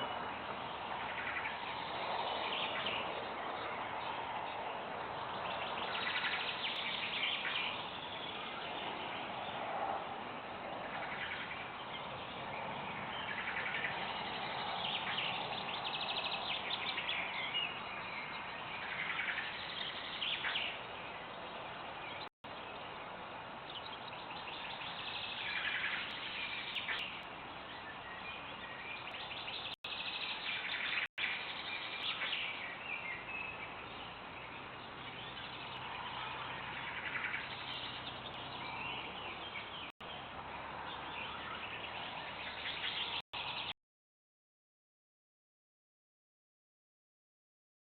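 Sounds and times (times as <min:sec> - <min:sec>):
birds chirping and trilling: 0:00.0 - 0:43.7.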